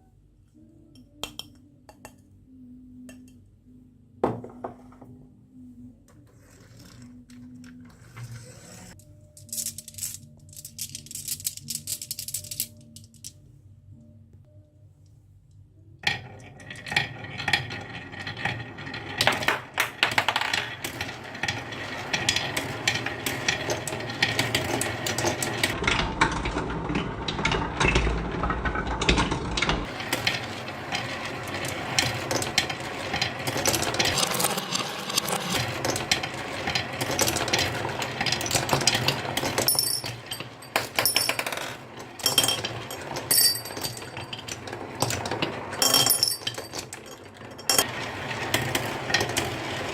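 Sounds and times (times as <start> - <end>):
marbles clattering down a marble run: 16.0 - 49.9.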